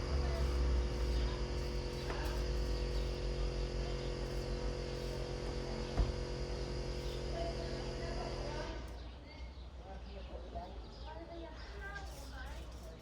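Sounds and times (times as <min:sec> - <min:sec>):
low machine hum: 0:00.0 - 0:10.0.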